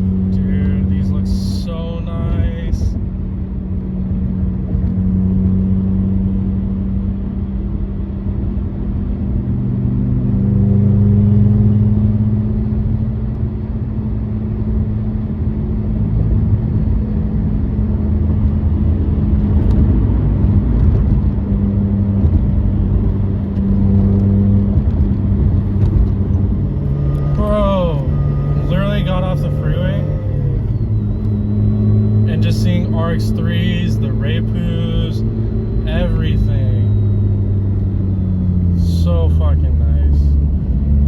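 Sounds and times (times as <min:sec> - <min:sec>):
car engine droning: 0:00.0 - 0:41.0
tyre and road noise: 0:14.7 - 0:41.0.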